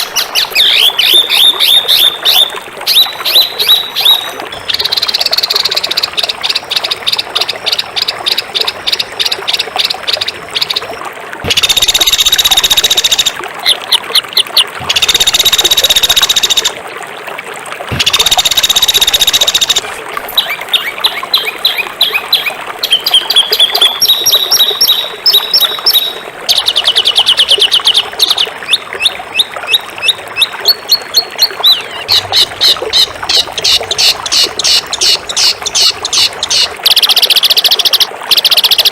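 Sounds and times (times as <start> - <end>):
songbird singing sharp notes: 0.0 - 7.5, 20.4 - 38.9.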